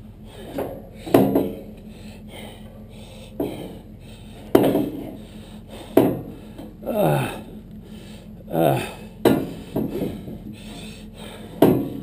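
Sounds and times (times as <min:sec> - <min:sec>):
steady low hum: 0:00.0 - 0:12.0
heavy ringing knocks: 0:00.5 - 0:01.8, 0:03.3 - 0:06.8, 0:09.1 - 0:10.5, 0:11.5 - 0:12.0.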